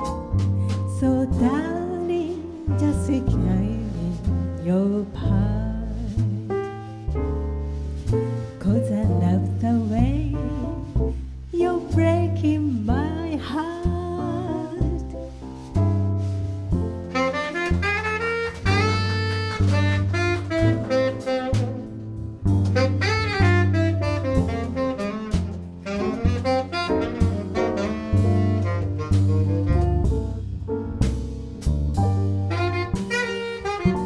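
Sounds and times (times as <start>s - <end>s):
jazz band playing: 0.0s - 34.0s.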